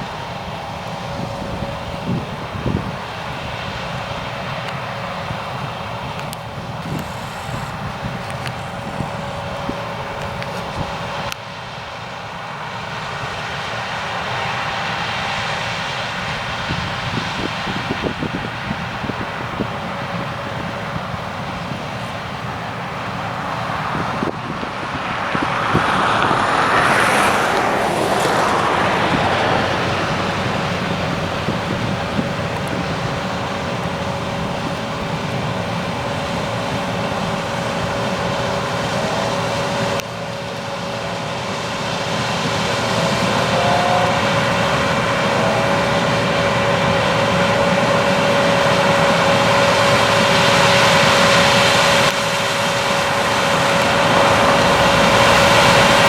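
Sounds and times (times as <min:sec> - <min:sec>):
combine harvester drone: 0:00.0 - 0:56.0
constant machine whine: 0:00.0 - 0:56.0.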